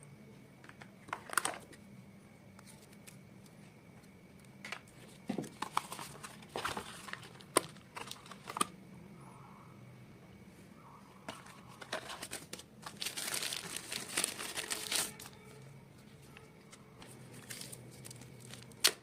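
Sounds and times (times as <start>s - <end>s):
packaging crinkling: 5.5s - 8.7s, 11.4s - 15.6s, 17.0s - 19.0s.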